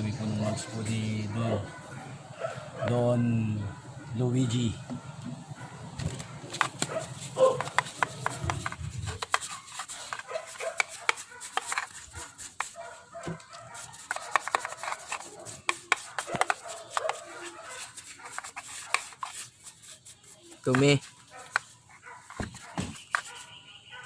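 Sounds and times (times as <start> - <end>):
dog barking: 0.2 - 4.2, 4.8 - 8.7, 9.9 - 19.2, 21.3 - 24.0
scratchy scrubbing strokes: 5.6 - 23.5.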